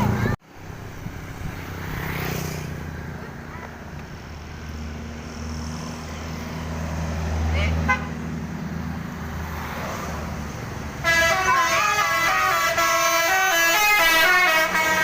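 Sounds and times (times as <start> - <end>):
bus engine running low: 0.0 - 2.0
musical bus horn playing a tune: 11.0 - 15.0.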